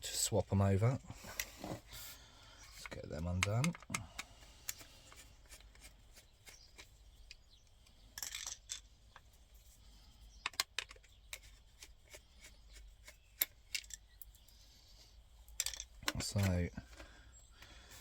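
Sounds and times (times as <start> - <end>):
tool and parts clicking: 2.7 - 5.9, 10.4 - 14.5, 15.5 - 17.1.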